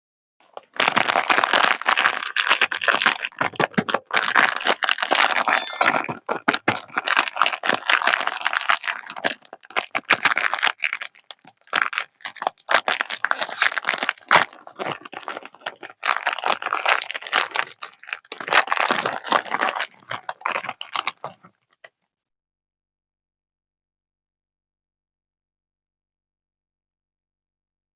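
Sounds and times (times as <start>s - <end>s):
wrappers crinkling and tearing: 0.6s - 5.3s, 6.8s - 21.7s.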